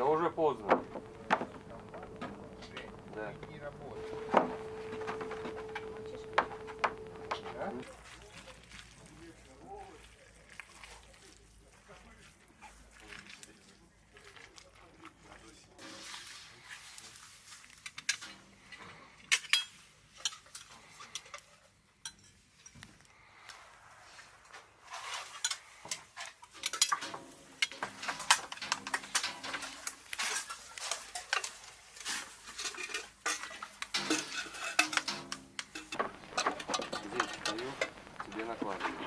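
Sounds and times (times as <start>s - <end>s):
metal dishes clattering: 25.4s - 37.7s.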